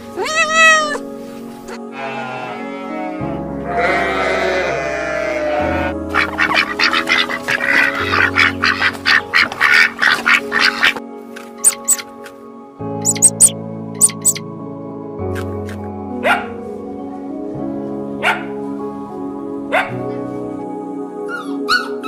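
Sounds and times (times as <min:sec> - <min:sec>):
ambient background music: 0:00.0 - 0:22.0
animal calling: 0:05.8 - 0:11.0, 0:11.6 - 0:12.1, 0:13.0 - 0:14.4.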